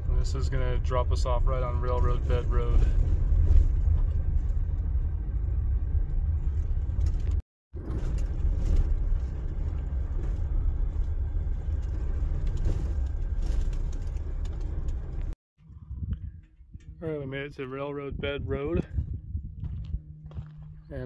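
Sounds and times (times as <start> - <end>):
vehicle rumbling on dirt road: 0.0 - 21.0
rattles and clicks: 6.0 - 17.6.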